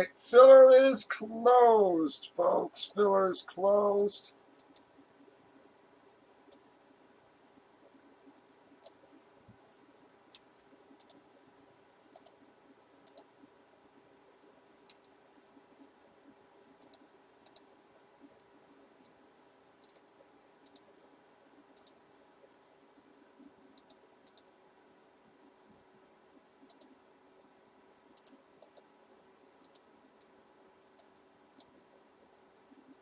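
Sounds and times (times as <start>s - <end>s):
faint steady hum: 0.0s - 33.0s
faint clicks: 4.6s - 4.9s, 8.8s - 9.6s, 10.3s - 11.4s, 12.1s - 12.4s, 13.0s - 13.3s, 16.8s - 18.4s, 19.8s - 20.9s, 21.7s - 22.0s, 23.7s - 24.5s, 26.6s - 27.0s, 28.1s - 28.9s, 29.6s - 30.4s.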